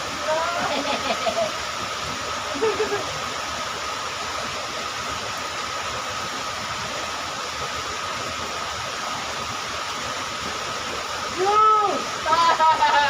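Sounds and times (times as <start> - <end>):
river water rushing: 0.0 - 13.0.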